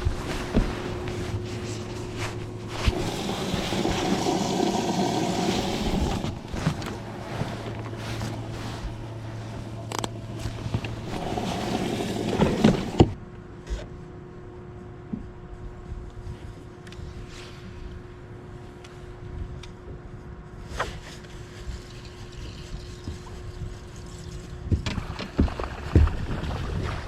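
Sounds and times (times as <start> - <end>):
boat engine hum: 0.0 - 13.2
water noise: 0.0 - 13.2, 21.6 - 27.0.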